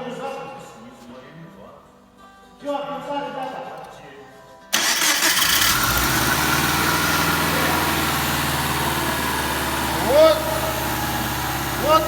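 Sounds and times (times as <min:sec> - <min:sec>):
car engine starting and idling: 0:04.7 - 0:12.0.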